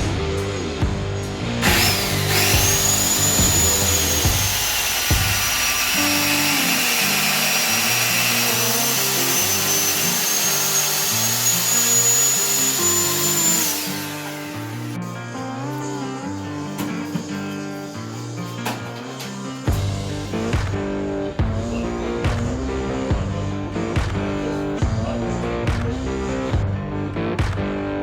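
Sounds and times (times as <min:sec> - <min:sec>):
guitar music: 0:00.0 - 0:28.0
electric motor high whine: 0:00.3 - 0:19.8.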